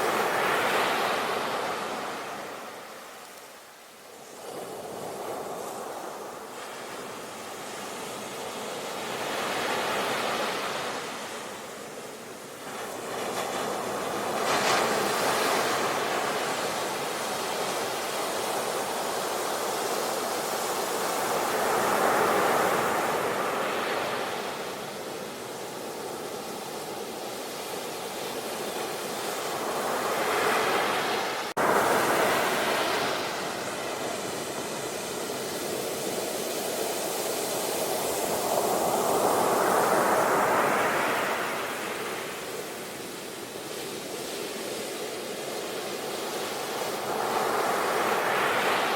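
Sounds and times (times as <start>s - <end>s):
sea waves breaking: 12.6s - 43.3s.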